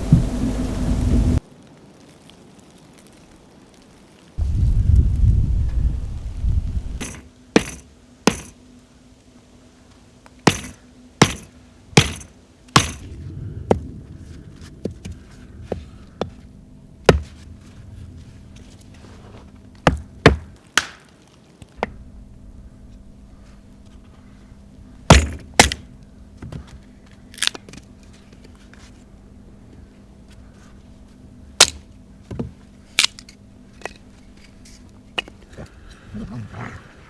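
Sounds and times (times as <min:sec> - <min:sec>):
faint steady hum: 0:00.0 - 0:37.0
sharp knocks: 0:07.0 - 0:08.6, 0:10.5 - 0:13.1, 0:17.0 - 0:17.4, 0:19.8 - 0:20.6, 0:25.1 - 0:25.8.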